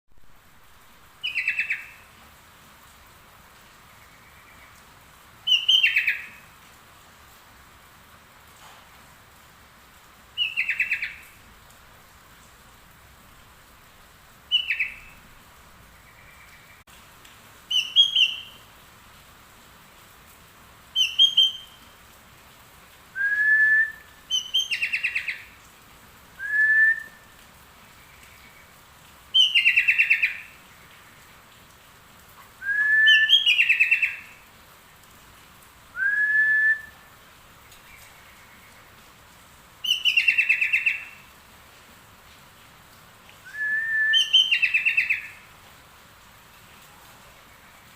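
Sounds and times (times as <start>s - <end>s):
bulbul singing trills and whistles: 1.2s - 2.0s, 5.5s - 6.3s, 14.5s - 15.0s, 17.7s - 18.6s, 21.0s - 21.8s, 23.4s - 25.4s, 29.4s - 30.4s, 32.7s - 34.3s, 39.8s - 41.1s, 43.5s - 45.4s.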